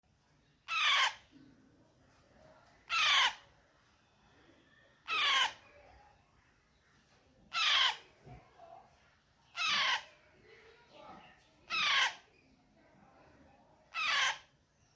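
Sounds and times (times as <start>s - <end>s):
parrot calling loudly: 0.7s - 1.2s, 2.9s - 3.4s, 5.1s - 5.6s, 7.5s - 8.0s, 9.6s - 10.0s, 11.7s - 12.2s, 14.0s - 14.4s.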